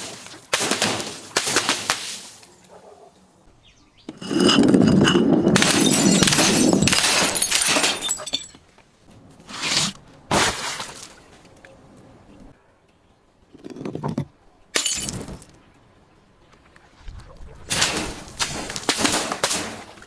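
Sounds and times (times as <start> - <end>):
glass bottle breaking and crunching: 4.5 - 8.6, 14.8 - 15.5.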